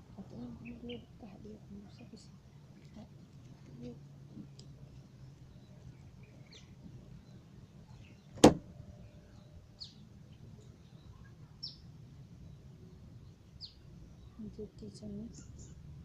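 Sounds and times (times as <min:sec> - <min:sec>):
low steady hum: 0:00.0 - 0:16.0
faint bird chirps: 0:09.0 - 0:15.8.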